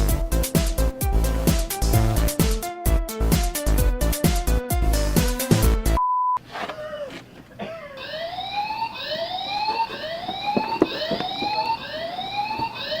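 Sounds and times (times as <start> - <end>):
whooping electronic siren: 8.0 - 13.0.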